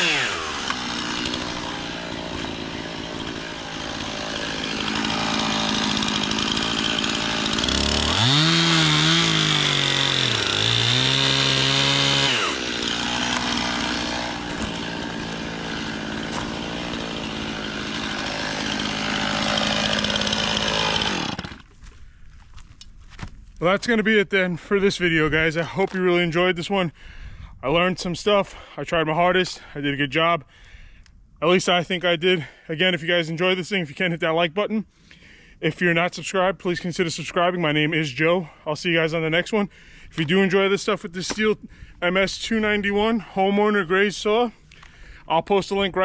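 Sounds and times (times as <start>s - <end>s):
chainsaw cutting wood: 0.0s - 21.8s, 41.2s - 41.6s.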